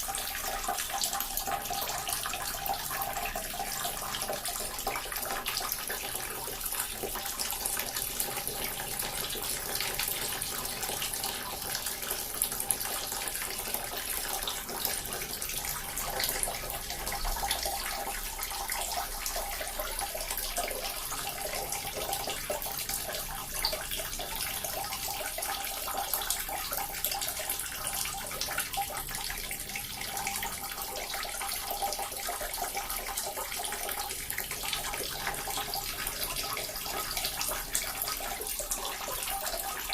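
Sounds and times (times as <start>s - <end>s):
water fountain splashing: 0.0s - 39.9s.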